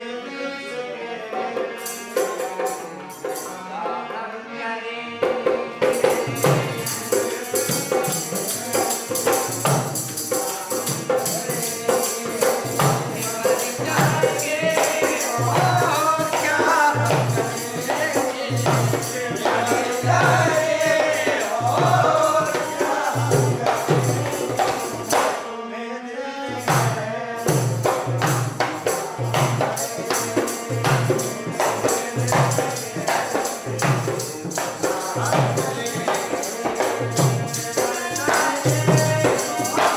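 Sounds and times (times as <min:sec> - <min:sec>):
harmonium: 0:00.0 - 0:39.9
person singing: 0:00.0 - 0:39.9
jingling percussion: 0:01.5 - 0:04.0, 0:05.2 - 0:25.5, 0:26.5 - 0:39.9
dholak drum beat: 0:05.2 - 0:25.4, 0:26.5 - 0:39.9.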